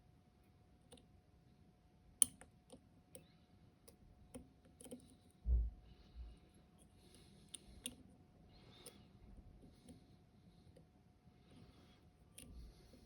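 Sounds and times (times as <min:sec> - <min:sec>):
dull low thump: 0:05.5 - 0:05.8.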